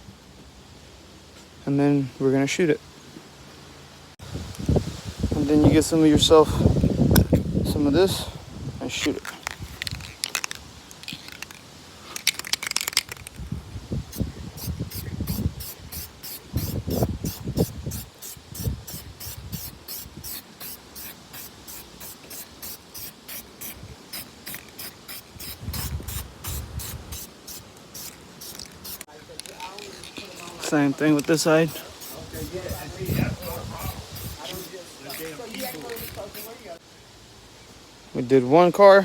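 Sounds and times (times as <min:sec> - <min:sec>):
aerosol spray can hissing: 0:14.1 - 0:36.8.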